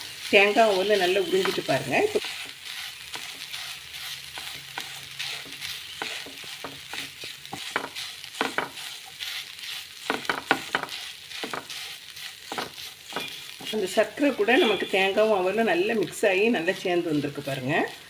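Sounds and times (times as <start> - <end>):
light sizzle: 0.0 - 18.0
spatula scraping a pan: 0.0 - 18.0.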